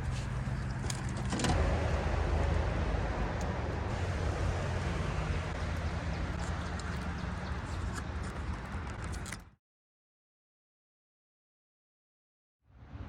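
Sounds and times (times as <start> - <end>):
boat motor running: 0.0 - 9.0
water noise: 0.0 - 9.4.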